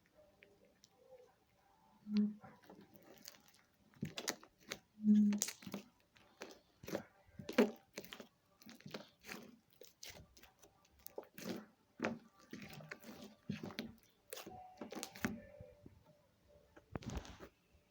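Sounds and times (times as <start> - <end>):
slime crackling and popping: 2.2 - 15.4.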